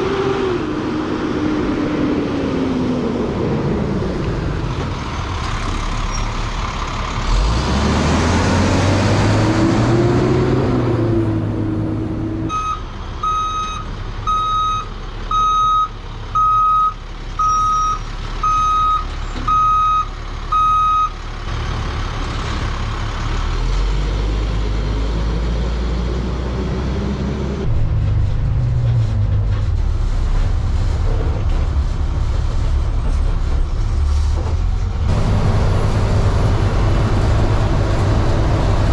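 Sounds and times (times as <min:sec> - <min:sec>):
truck diesel engine revving: 0:00.0 - 0:12.7, 0:18.1 - 0:38.9
backup alarm beeping: 0:12.5 - 0:21.1.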